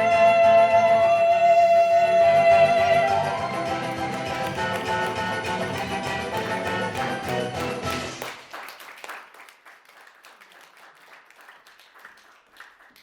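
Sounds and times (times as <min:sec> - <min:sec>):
song music: 0:00.0 - 0:08.4
audience applause: 0:03.2 - 0:13.0.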